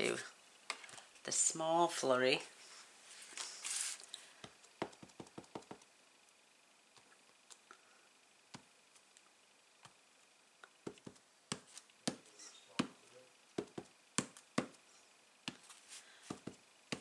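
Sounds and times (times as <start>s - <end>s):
stamp block tapping: 13.6s - 14.8s.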